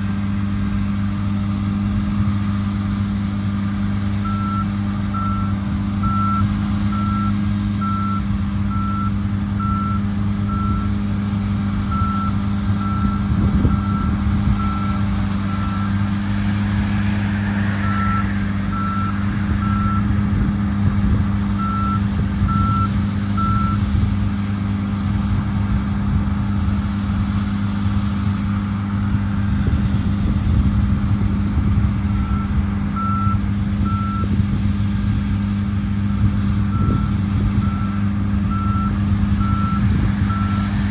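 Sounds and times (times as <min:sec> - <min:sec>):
diesel farm machinery running: 0:00.0 - 0:40.9
electronic warning beeper: 0:04.2 - 0:10.9, 0:21.6 - 0:23.8.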